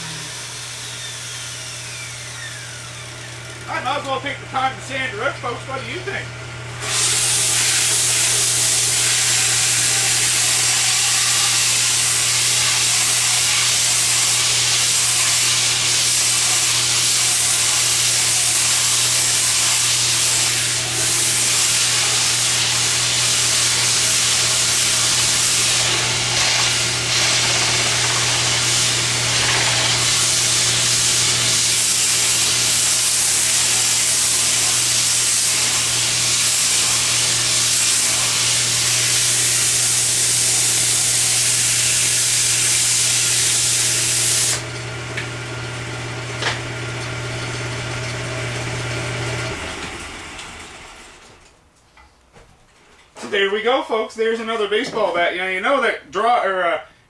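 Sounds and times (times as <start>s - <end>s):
lathe motor hum: 0.0s - 51.3s
sandpaper hissing on spinning wood: 6.8s - 44.6s.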